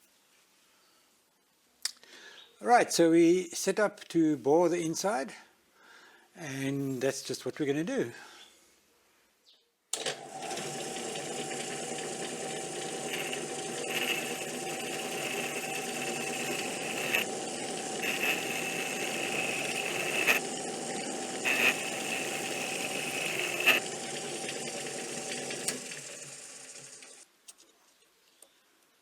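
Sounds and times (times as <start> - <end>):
metal lathe cutting steel: 10.0 - 27.2.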